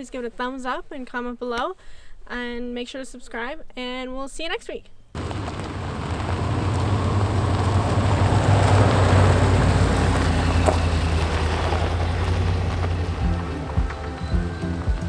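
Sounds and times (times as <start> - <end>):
truck engine and road rumble: 5.2 - 15.0.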